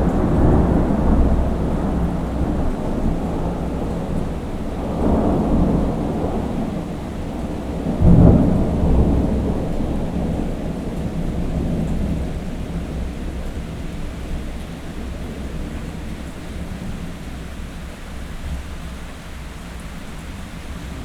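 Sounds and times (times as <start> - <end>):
thunder crack: 0.0 - 13.2
thunder rumbling: 0.0 - 18.7
heavy rain: 0.0 - 21.0.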